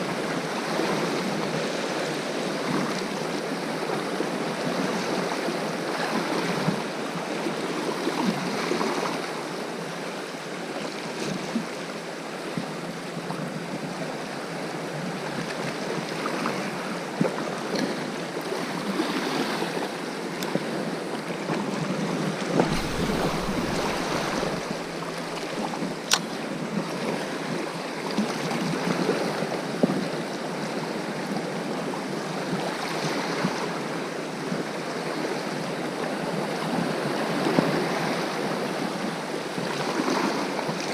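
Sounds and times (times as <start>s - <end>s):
sea waves washing on shore: 14.6s - 40.9s
wind gusting on microphone: 22.4s - 26.9s.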